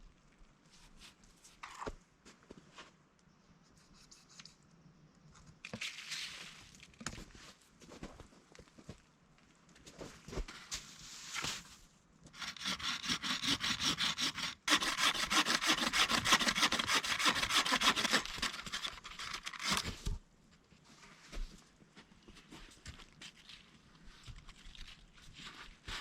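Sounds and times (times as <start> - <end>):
hand saw cutting wood: 12.3 - 19.9.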